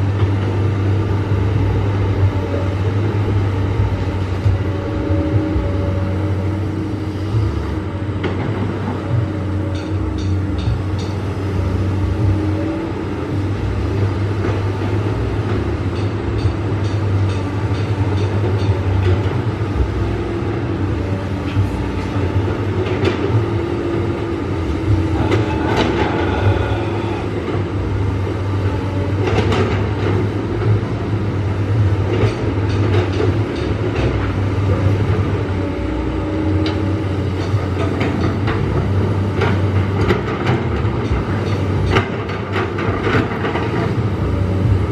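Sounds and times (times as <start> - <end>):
excavator diesel engine running: 0.0 - 44.9
excavator bucket clanks: 13.9 - 44.9.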